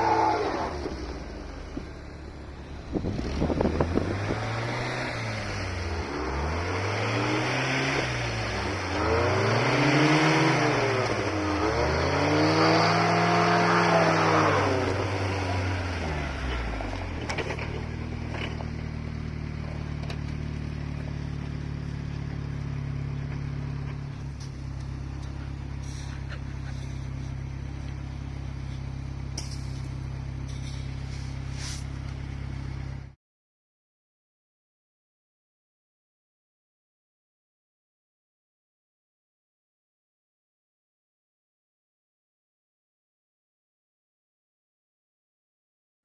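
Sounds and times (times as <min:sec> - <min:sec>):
car engine revving and idling: 0:00.0 - 0:33.2.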